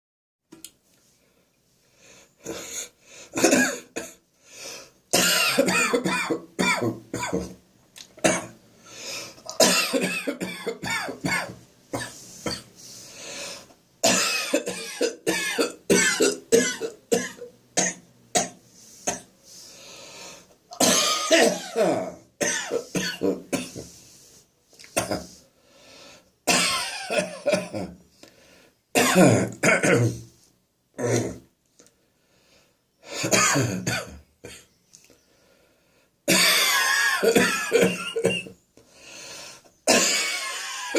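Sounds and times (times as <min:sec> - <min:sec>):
person coughing: 0:03.4 - 0:04.2, 0:05.2 - 0:07.6, 0:09.5 - 0:12.7, 0:14.0 - 0:19.2, 0:20.8 - 0:23.8, 0:25.0 - 0:25.4, 0:26.5 - 0:28.0, 0:29.0 - 0:30.2, 0:33.2 - 0:34.7, 0:36.3 - 0:38.6, 0:39.9 - 0:40.9.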